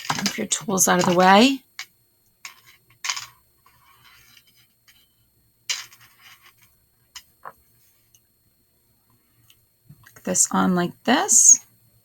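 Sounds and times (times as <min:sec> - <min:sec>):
tools clacking on work table: 0:00.0 - 0:03.3.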